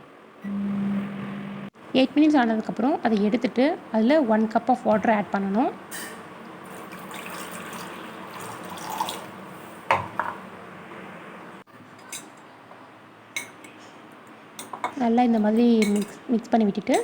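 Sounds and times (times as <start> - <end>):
water pouring into a bowl: 6.6 - 9.4.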